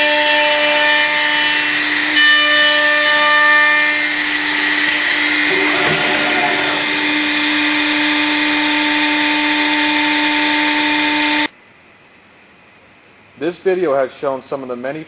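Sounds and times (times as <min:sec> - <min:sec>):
machine spindle motors whining: 0:00.0 - 0:11.5
loud hiss: 0:03.9 - 0:11.5
rough cutting noise: 0:04.0 - 0:11.5.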